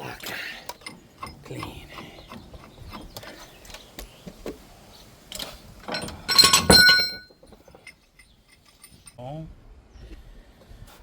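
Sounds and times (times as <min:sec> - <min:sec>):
loud metallic clatter with ringing: 0:05.9 - 0:09.2.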